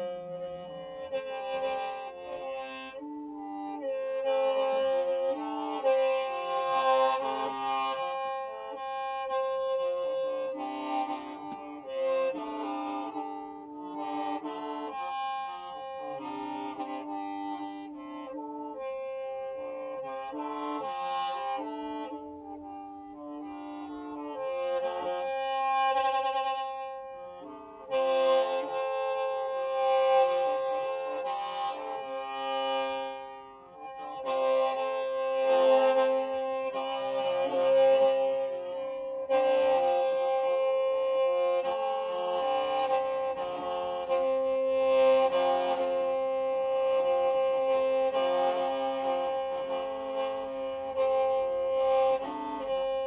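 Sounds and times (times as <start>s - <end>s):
bamboo mouth organ playing chords: 0.0s - 53.0s.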